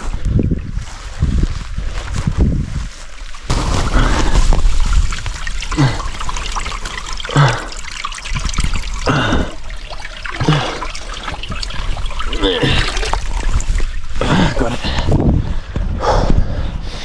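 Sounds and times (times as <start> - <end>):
wind rumble on microphone: 0.0 - 5.4, 13.2 - 17.0
water trickling and gurgling: 3.2 - 15.2.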